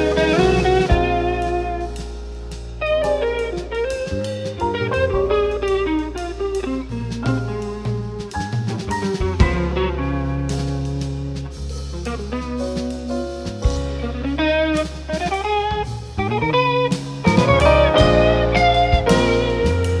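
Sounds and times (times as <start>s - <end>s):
electric guitar melody: 0.0s - 20.0s
jazz band playing waltz: 0.0s - 20.0s.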